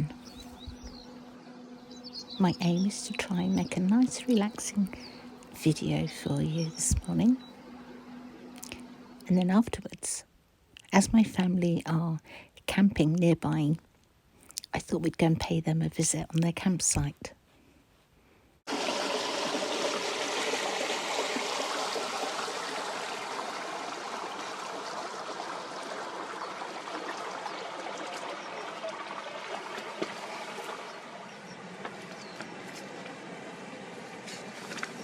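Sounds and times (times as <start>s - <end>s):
river water rippling and lapping: 0.0s - 9.4s, 18.7s - 35.0s.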